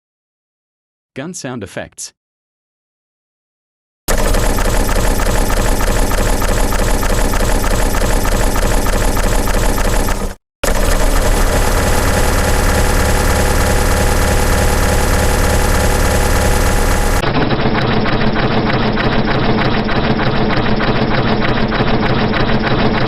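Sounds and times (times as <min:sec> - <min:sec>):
automatic gunfire: 0:04.1 - 0:17.2.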